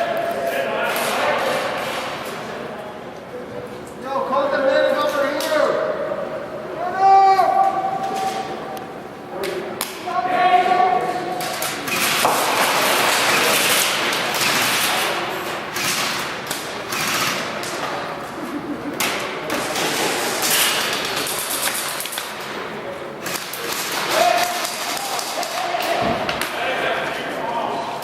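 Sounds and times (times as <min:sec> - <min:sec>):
airsoft guns firing in bursts: 0:15.7 - 0:17.5.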